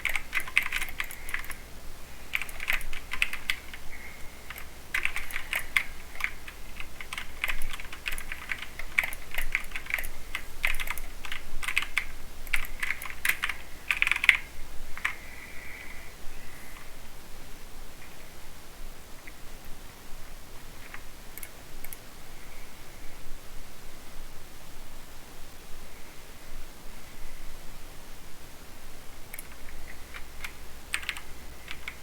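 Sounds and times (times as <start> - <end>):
mechanical keyboard typing: 0.0 - 1.7, 2.3 - 3.9, 4.5 - 15.2, 20.8 - 22.0, 29.3 - 32.0.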